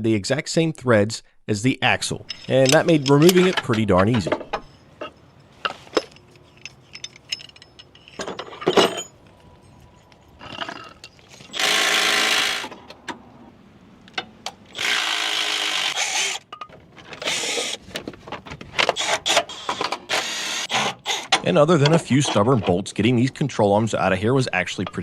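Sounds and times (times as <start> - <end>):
metal parts clanking: 2.1 - 13.0, 16.4 - 22.9, 24.7 - 25.0
handheld power tool running: 11.5 - 12.7, 14.7 - 16.4.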